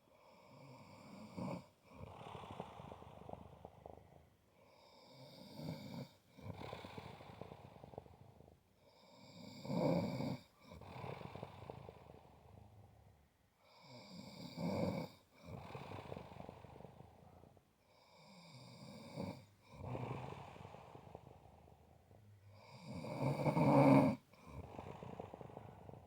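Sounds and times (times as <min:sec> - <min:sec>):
person snoring: 0:22.4 - 0:26.0.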